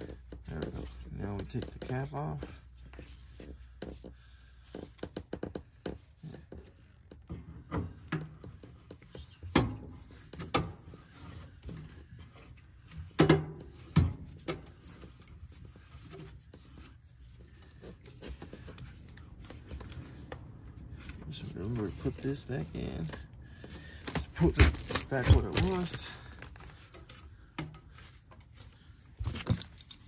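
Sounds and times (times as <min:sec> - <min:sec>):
small clicks and rubbing: 0:24.0 - 0:30.0.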